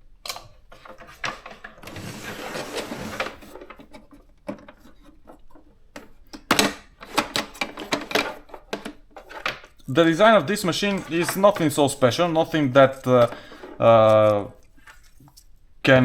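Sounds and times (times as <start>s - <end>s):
typewriter scraping on table: 1.0s - 3.9s.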